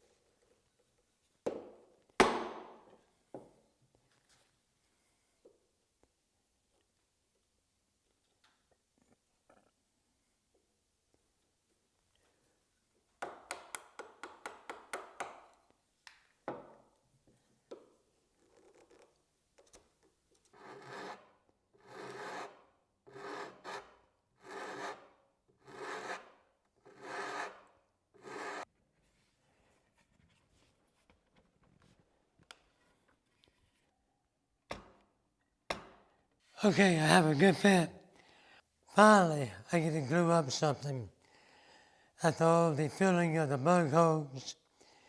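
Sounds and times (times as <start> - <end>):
hand tool scraping wood: 20.6 - 26.3.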